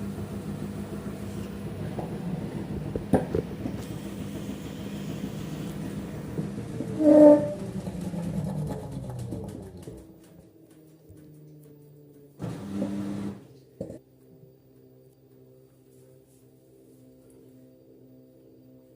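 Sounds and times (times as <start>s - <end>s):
washing machine spinning: 0.0s - 10.7s, 12.3s - 13.5s.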